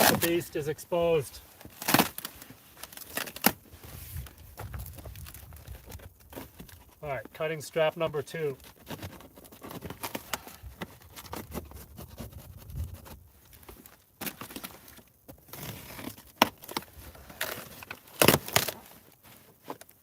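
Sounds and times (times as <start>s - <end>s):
packaging rustling: 0.0s - 7.0s.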